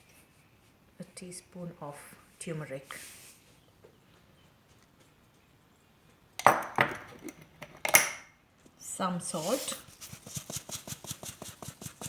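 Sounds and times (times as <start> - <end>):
metal spoon clinking on cookware: 6.4 - 8.3.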